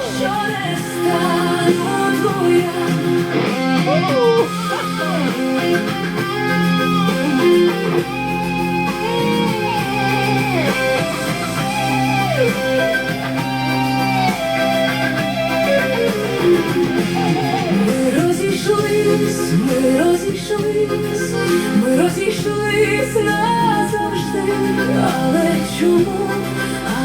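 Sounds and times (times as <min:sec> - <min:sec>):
electric guitar melody: 0:00.0 - 0:27.0
sustained chords: 0:00.9 - 0:26.6.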